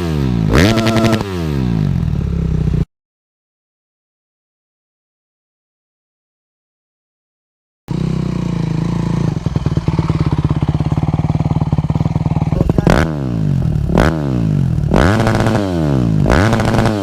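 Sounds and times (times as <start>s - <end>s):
motorbike engine idling and revving: 0.0s - 2.9s, 7.9s - 17.0s.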